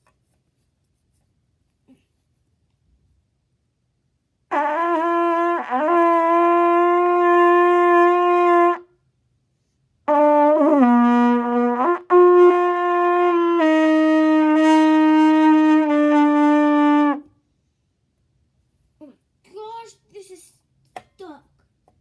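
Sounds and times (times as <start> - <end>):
trumpet long held notes: 4.5 - 8.9, 10.1 - 17.3.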